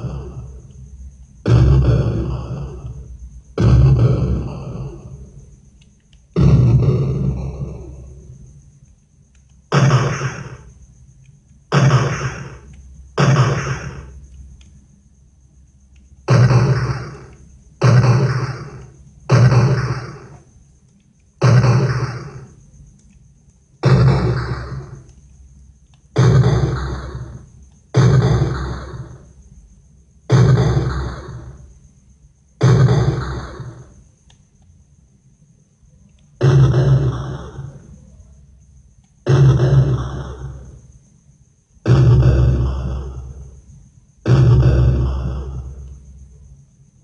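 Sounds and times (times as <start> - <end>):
gunshots: 1.4 - 3.0, 3.6 - 5.3, 6.4 - 8.0, 9.7 - 10.7, 11.7 - 14.2, 16.3 - 20.5, 21.4 - 22.6, 23.8 - 25.1, 26.2 - 29.4, 30.3 - 31.7, 32.6 - 34.0, 36.4 - 37.9, 39.3 - 40.8, 41.9 - 43.5, 44.2 - 45.9.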